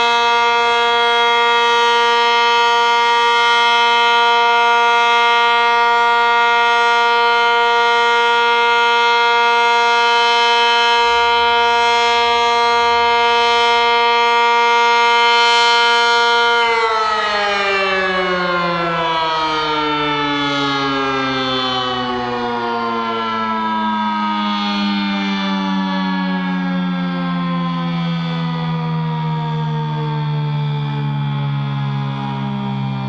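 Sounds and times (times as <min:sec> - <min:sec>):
tornado siren winding down: 0:00.0 - 0:33.0.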